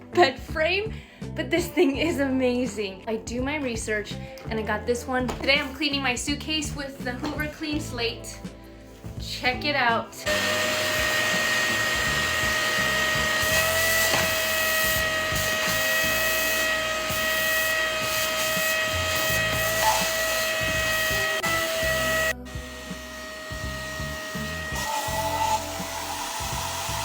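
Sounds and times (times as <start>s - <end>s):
spot cleaner motor whine: 10.3s - 27.0s.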